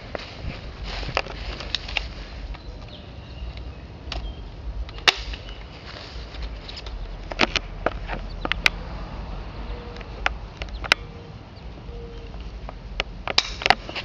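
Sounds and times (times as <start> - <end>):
airsoft gun snaps: 13.3 - 13.8.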